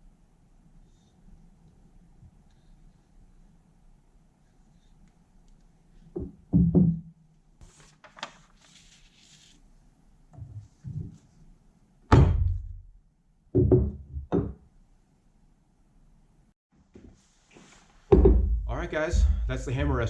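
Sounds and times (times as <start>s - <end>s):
hard knocks and thuds: 6.2s - 7.0s, 12.1s - 12.8s, 18.1s - 20.0s.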